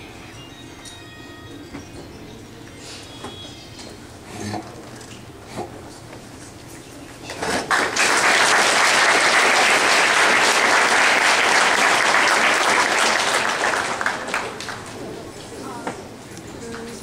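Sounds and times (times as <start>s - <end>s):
audience applauding: 7.6s - 15.0s.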